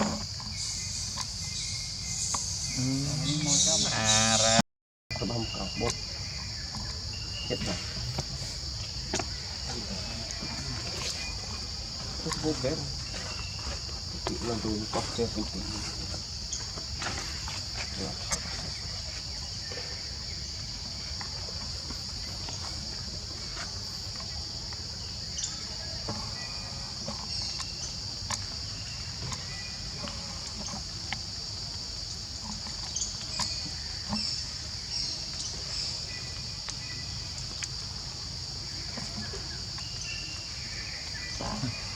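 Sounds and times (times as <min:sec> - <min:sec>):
high-pitched insect drone: 0:00.0 - 0:04.6.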